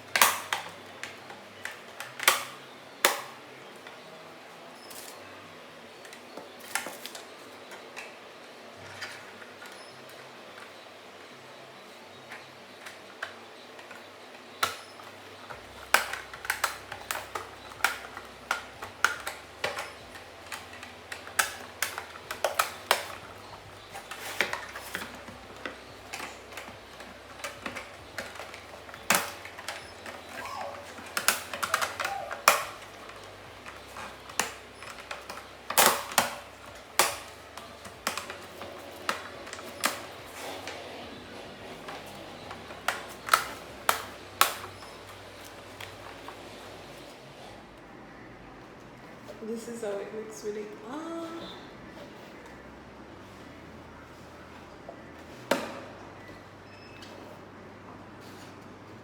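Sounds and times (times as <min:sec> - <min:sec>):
sharp snaps: 0:00.0 - 0:03.5, 0:12.3 - 0:47.1
plastic parts clicking together: 0:00.0 - 0:04.2, 0:06.0 - 0:08.2, 0:08.8 - 0:47.1.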